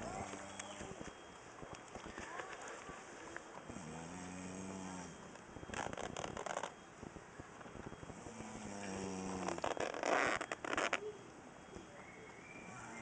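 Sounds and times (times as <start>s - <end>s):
man snoring heavily: 8.3s - 9.6s.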